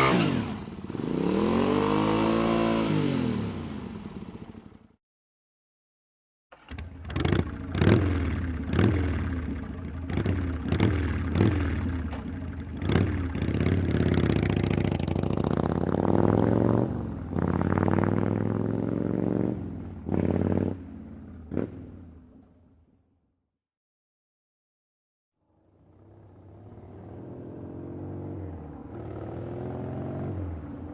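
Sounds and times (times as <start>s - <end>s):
motorcycle engine revving: 0.0s - 4.9s, 6.5s - 22.4s, 25.7s - 30.9s.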